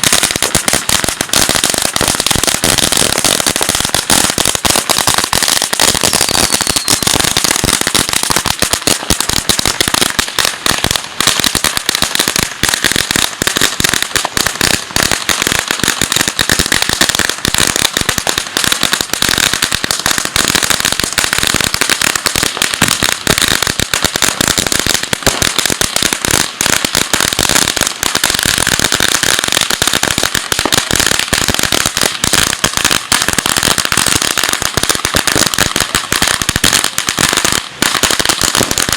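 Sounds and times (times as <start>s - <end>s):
firecrackers crackling: 0.0s - 38.9s.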